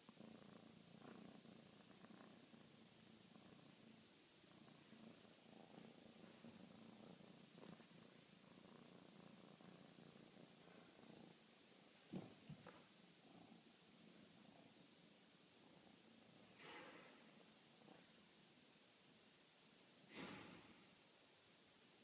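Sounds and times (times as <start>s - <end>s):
pet snoring: 0.0s - 11.5s.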